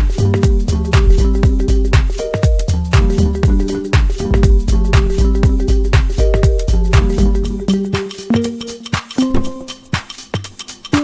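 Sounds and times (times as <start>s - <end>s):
electronic dance music: 0.9s - 11.0s.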